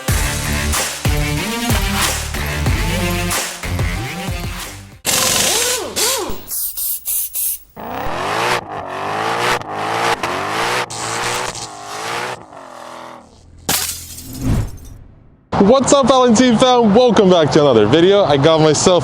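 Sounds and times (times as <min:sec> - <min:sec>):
car engine revving hard: 0:05.1 - 0:06.4, 0:07.8 - 0:13.6
tire squeal: 0:05.1 - 0:13.6.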